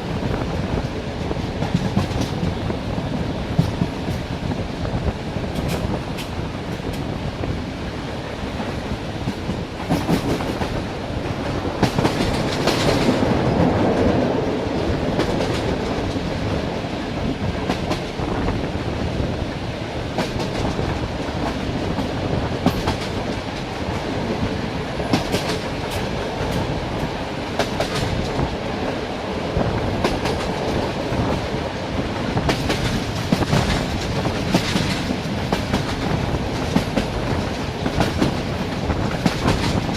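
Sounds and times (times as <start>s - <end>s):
train wheels rumbling on rails: 0.0s - 39.9s
wheels clacking over rail joints: 8.6s - 16.6s, 20.2s - 29.0s, 29.7s - 39.9s.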